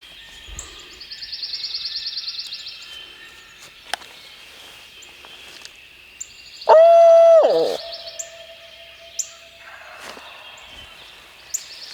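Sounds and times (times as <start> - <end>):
small bird trilling: 6.7 - 8.4
loud pitched bird call: 6.7 - 9.3.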